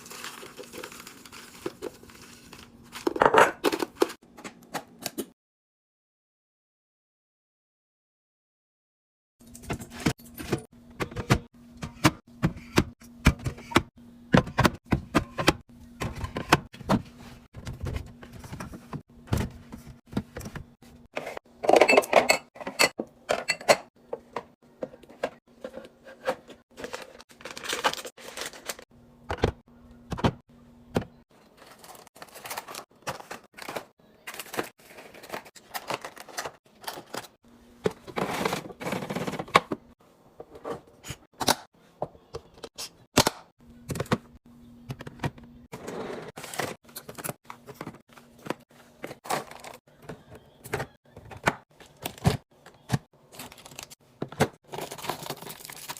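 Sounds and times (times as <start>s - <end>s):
plastic rustling: 0.0s - 3.2s.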